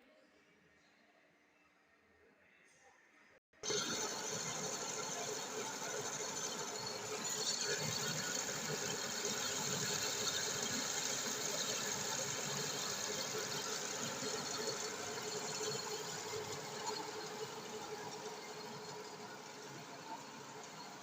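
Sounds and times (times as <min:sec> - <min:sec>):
lathe humming and whining: 0:03.6 - 0:21.0.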